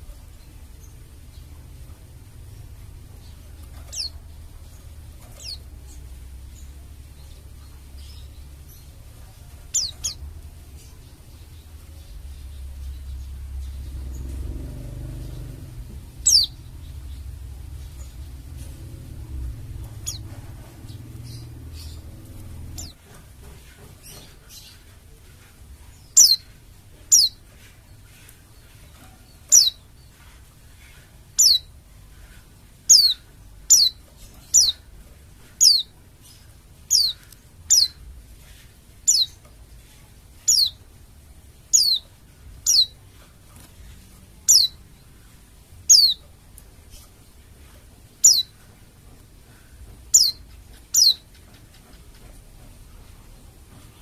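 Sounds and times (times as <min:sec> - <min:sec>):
low rumble: 0:11.4 - 0:23.0.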